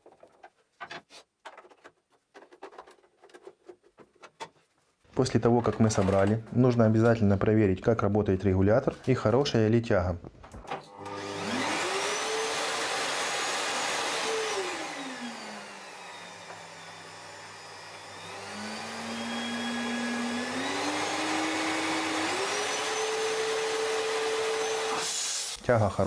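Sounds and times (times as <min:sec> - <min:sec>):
vacuum cleaner motor: 0:10.9 - 0:25.6.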